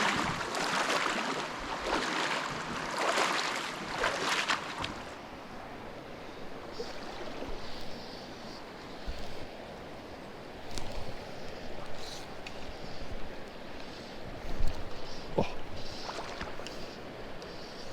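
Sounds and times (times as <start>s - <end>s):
creek water rushing: 0.0s - 7.6s.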